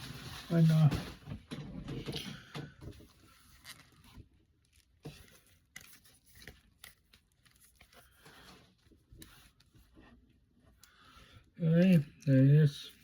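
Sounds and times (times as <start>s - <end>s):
paper packaging rustling and tearing: 0.0s - 1.3s, 2.9s - 9.9s
small clicks and crinkles: 0.5s - 13.0s.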